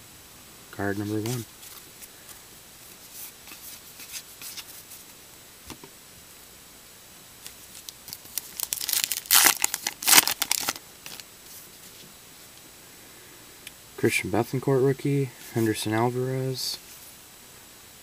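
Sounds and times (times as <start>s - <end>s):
wrapper rustling and crinkling: 7.7s - 12.0s
wrapper tearing: 7.8s - 11.2s.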